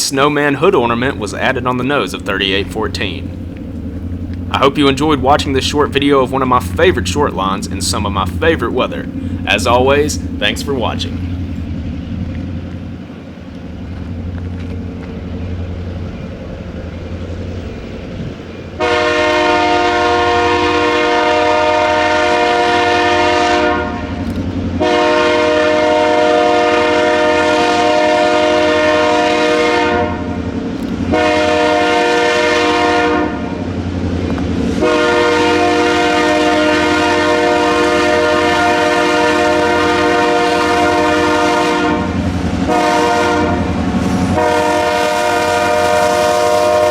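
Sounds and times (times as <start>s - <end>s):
diesel locomotive idling: 0.0s - 46.9s
locomotive air horn blasts: 18.8s - 33.7s, 34.7s - 46.9s.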